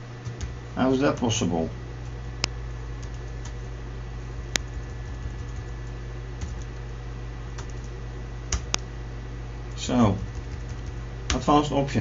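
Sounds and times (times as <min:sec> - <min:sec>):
steady low hum: 0:00.0 - 0:12.0
computer keyboard keystrokes: 0:00.2 - 0:01.3, 0:04.5 - 0:05.7, 0:06.4 - 0:06.8, 0:07.6 - 0:07.9, 0:08.5 - 0:08.8, 0:10.2 - 0:11.5.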